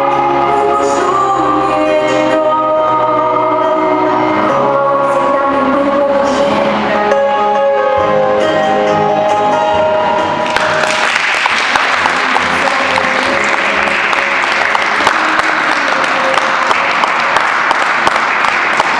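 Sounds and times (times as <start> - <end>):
music with held chords: 0.0 - 16.8
audience clapping: 10.4 - 18.9.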